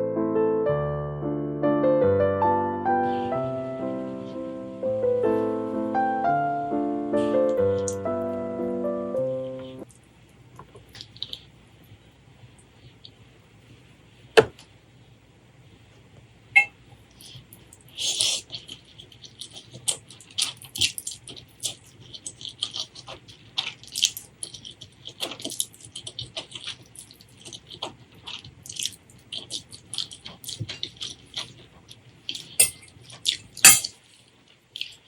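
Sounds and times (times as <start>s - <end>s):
wet chewing mouth sounds: 9.8s - 13.2s, 17.1s - 35.0s.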